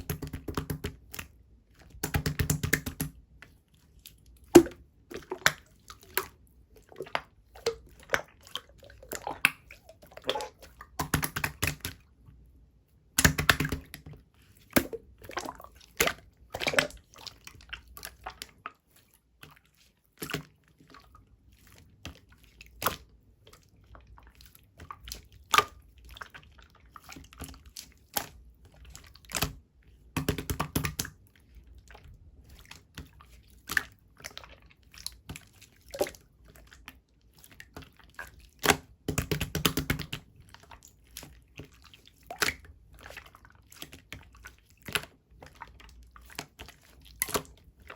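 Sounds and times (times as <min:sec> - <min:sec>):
slime squeezed with wet clicks: 0:42.3 - 0:42.7.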